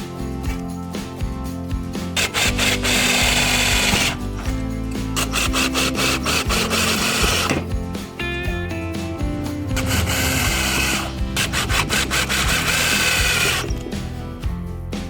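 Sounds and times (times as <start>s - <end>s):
background music with beat: 0.0s - 15.0s
power tool grinding hiss: 2.0s - 7.6s, 9.6s - 13.9s.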